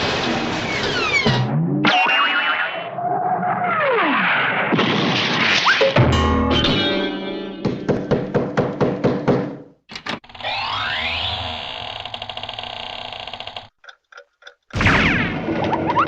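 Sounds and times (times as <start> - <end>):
steady buzz: 10.2 - 13.7.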